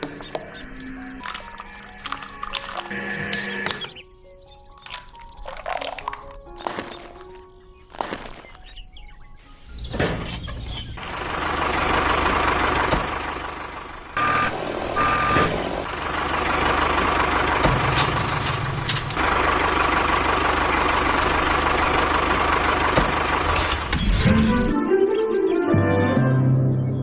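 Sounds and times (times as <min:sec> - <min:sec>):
vehicle engine running: 0:11.0 - 0:14.2, 0:15.8 - 0:23.9.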